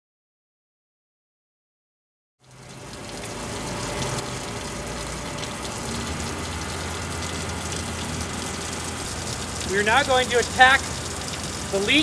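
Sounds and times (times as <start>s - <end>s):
water spraying from pipe leak: 2.4s - 12.0s
low steady hum: 2.5s - 12.0s.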